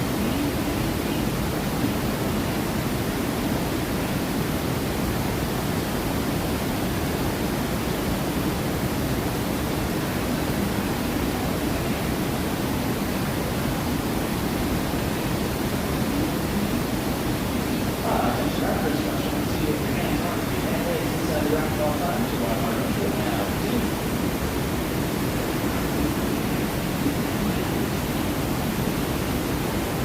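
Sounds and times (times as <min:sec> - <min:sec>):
rushing falling water: 0:00.0 - 0:30.0.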